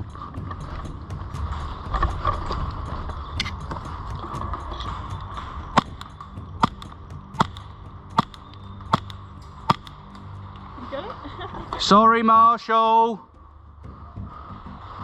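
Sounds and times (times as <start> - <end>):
airsoft gun shots: 5.8 - 7.6, 8.2 - 10.0.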